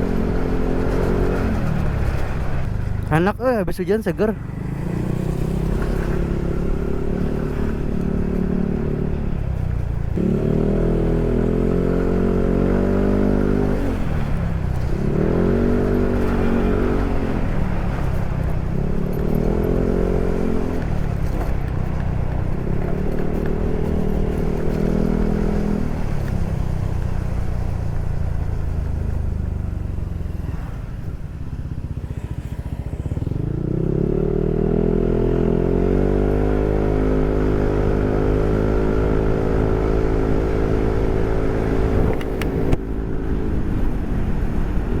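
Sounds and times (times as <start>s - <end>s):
scooter engine revving: 10.1s - 26.4s, 31.1s - 44.8s.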